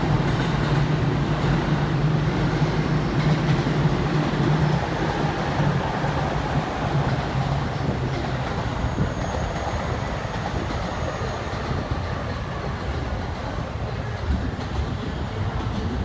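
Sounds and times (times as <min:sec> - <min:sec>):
electric train rolling rumble: 0:00.0 - 0:16.0.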